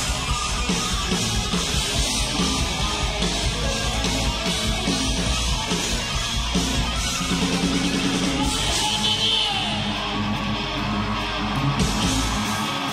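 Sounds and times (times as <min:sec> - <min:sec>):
electric guitar: 0:00.0 - 0:12.9
heavy metal band playing live: 0:00.0 - 0:12.9.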